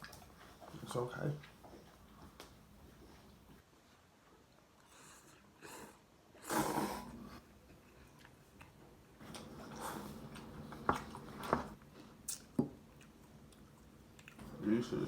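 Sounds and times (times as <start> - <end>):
noodles being slurped: 5.1 - 7.4
chewing with sharp clicks: 10.3 - 14.5.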